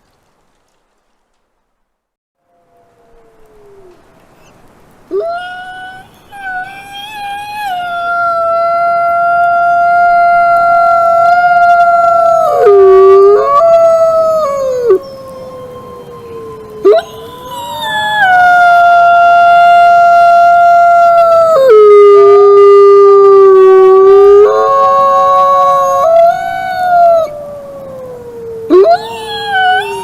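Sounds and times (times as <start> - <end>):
wolves howling: 2.4 - 4.5, 5.1 - 30.0.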